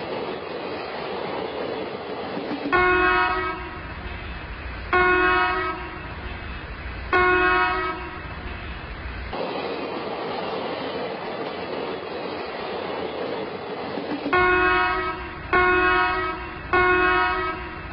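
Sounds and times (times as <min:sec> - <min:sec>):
train running noise: 0:00.0 - 0:17.9
locomotive horn blasts: 0:02.7 - 0:04.3, 0:04.9 - 0:06.4, 0:07.1 - 0:08.3, 0:14.3 - 0:17.9.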